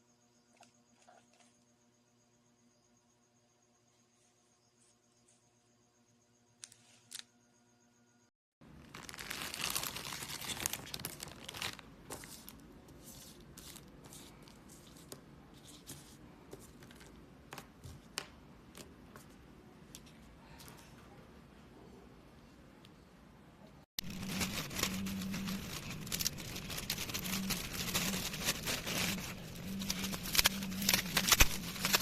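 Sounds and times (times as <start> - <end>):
plastic packaging crinkling: 8.6 - 12.6, 24.0 - 32.0.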